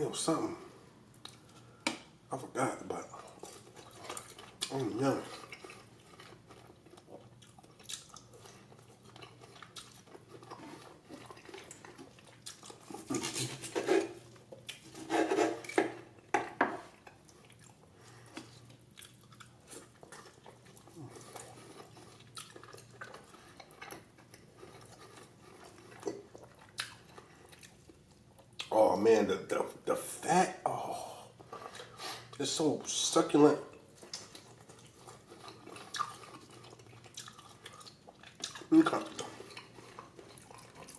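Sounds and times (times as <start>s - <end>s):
person chewing steak: 3.0s - 16.3s, 16.9s - 28.7s, 33.7s - 40.9s.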